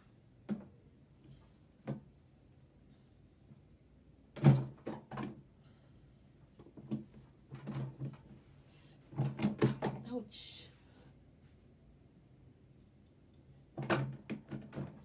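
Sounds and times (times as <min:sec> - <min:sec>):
sewing machine knocks and clunks: 0:04.4 - 0:05.3, 0:13.8 - 0:15.0.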